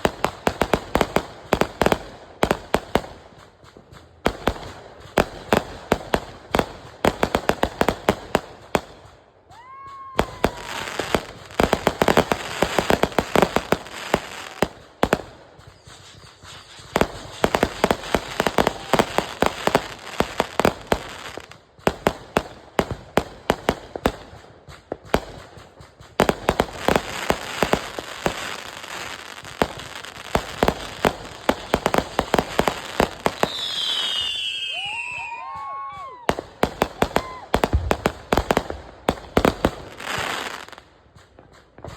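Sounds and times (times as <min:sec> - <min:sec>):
fireworks crackling volleys: 0:00.0 - 0:41.9
falling firework whistle: 0:09.5 - 0:12.8, 0:15.6 - 0:20.3, 0:33.0 - 0:38.1.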